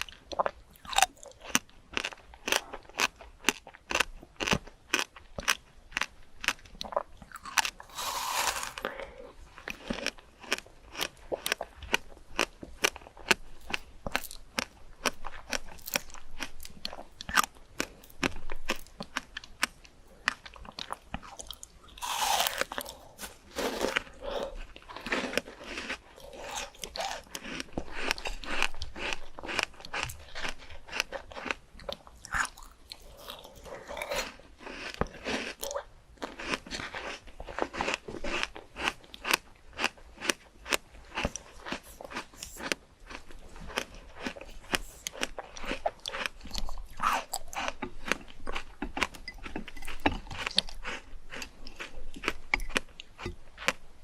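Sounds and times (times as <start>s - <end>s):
chewing crisp fruit: 0.0s - 54.0s.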